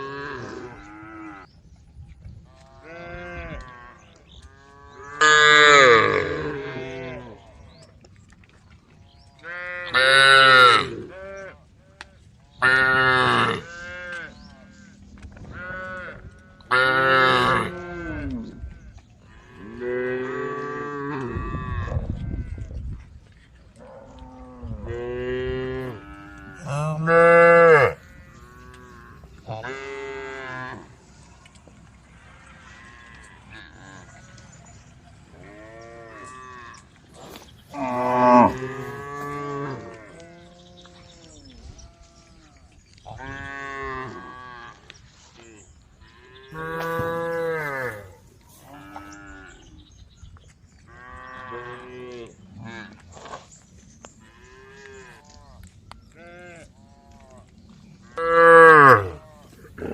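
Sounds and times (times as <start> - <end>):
cows mooing: 4.8 - 7.3, 12.6 - 14.4, 15.5 - 18.5, 23.8 - 31.0, 35.4 - 40.5, 46.5 - 49.7, 58.1 - 59.9.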